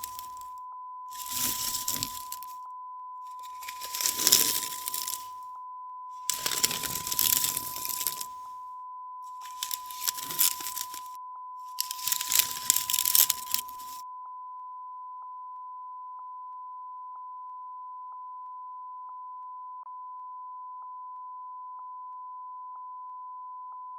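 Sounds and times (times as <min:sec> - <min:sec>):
bamboo blind rustling and rattling: 0:00.0 - 0:00.4, 0:01.2 - 0:02.5, 0:03.4 - 0:05.3, 0:06.3 - 0:08.4, 0:09.4 - 0:11.1, 0:11.8 - 0:14.0.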